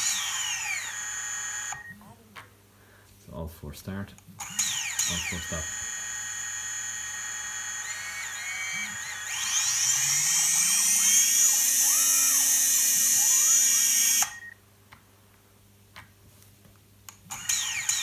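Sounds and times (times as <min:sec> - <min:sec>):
drone motors whining: 0:00.0 - 0:02.0, 0:04.4 - 0:14.5, 0:17.3 - 0:18.0.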